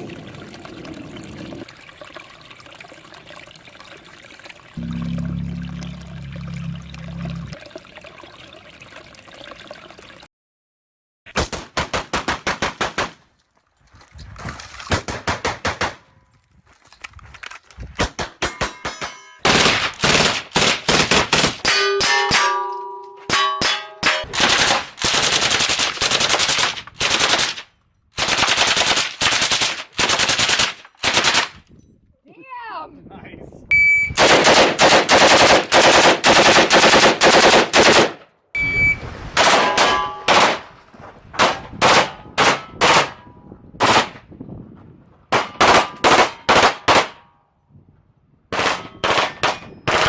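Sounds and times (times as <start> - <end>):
rapid pistol shots: 18.0 - 21.7, 24.2 - 31.6, 34.2 - 38.2, 45.3 - 47.2
steel targets ringing: 18.5 - 19.5, 21.6 - 24.4, 38.6 - 40.4.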